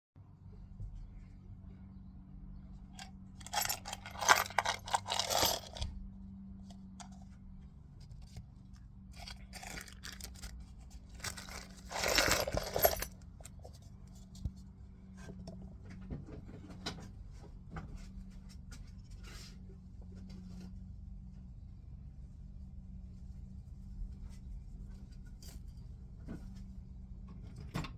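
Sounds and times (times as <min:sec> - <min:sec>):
metal screws rattling: 0:03.4 - 0:05.8, 0:09.2 - 0:10.5, 0:11.2 - 0:13.1.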